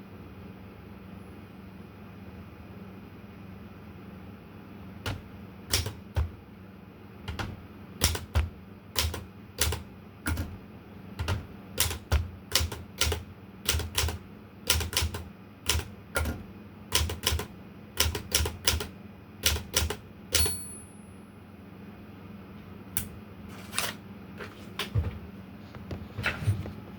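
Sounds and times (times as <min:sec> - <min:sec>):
typewriter keystrokes: 0:05.1 - 0:06.4, 0:07.3 - 0:10.6, 0:11.2 - 0:20.8
typewriter bell ring: 0:20.4 - 0:21.2.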